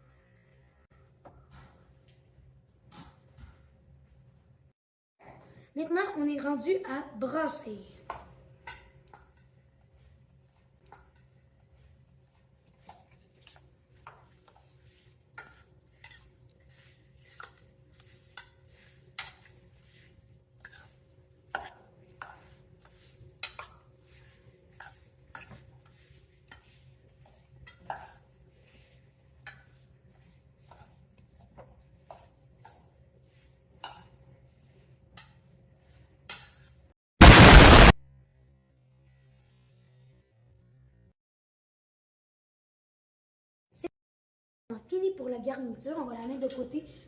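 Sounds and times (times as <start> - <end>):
utensil scraping a bowl: 8.6 - 36.9.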